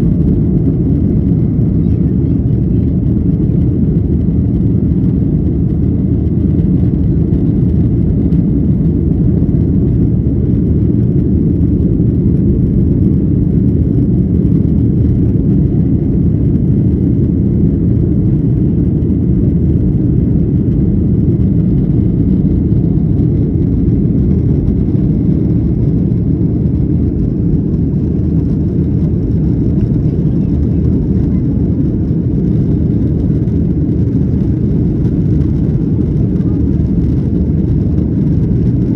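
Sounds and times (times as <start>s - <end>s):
jet engine rumble in cabin: 0.0s - 38.9s.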